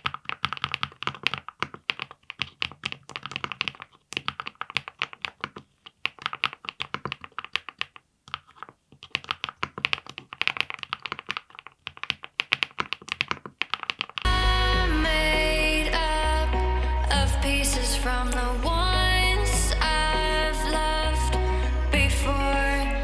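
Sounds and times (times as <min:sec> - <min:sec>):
mechanical keyboard typing: 0:00.0 - 0:14.3
music: 0:14.3 - 0:23.0.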